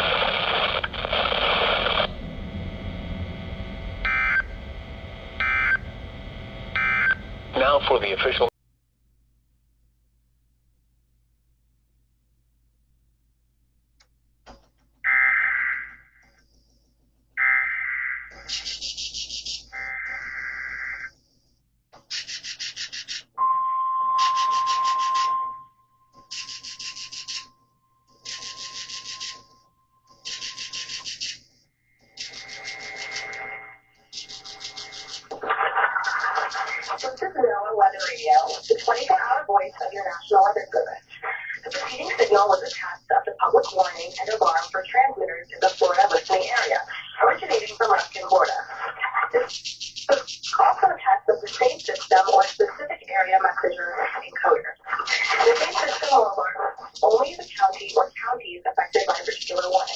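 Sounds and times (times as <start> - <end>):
radio receiver hiss: 0.0 - 8.5, 34.2 - 58.2
shrill digital data tones: 18.4 - 20.3, 22.1 - 31.4, 32.1 - 37.2, 47.4 - 50.7.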